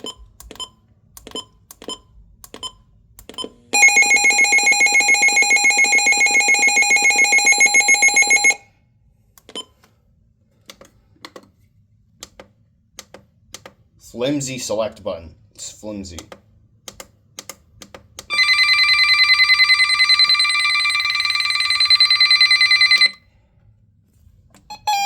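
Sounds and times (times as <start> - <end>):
shrill pulsing alarm tone: 3.8 - 8.6, 18.3 - 23.2.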